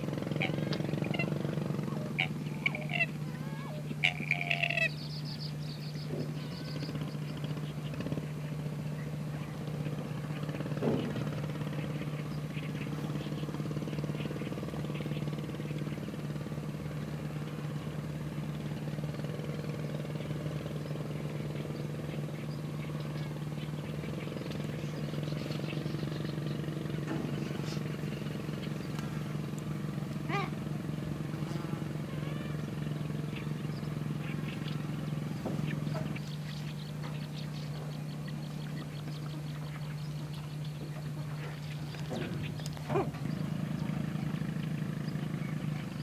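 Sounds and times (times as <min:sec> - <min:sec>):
steady engine hum: 0:00.0 - 0:46.0
short sharp bird calls: 0:00.3 - 0:16.2, 0:19.0 - 0:29.5.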